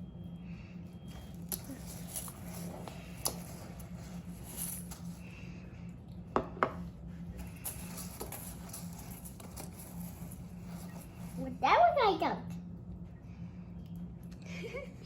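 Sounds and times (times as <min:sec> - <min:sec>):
steady low hum: 0:00.0 - 0:15.0
spoon stirring cereal in bowl: 0:01.1 - 0:05.4, 0:06.7 - 0:11.4.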